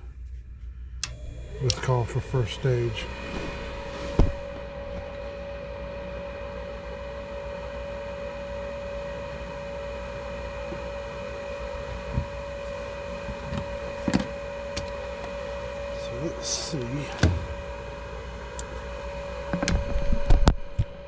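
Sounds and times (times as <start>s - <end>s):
furnace motor humming and whining: 0.0s - 21.0s.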